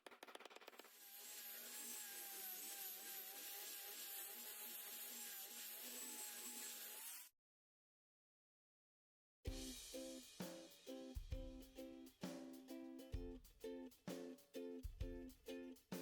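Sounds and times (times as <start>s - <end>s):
power tool motor whirring: 0.9s - 7.3s.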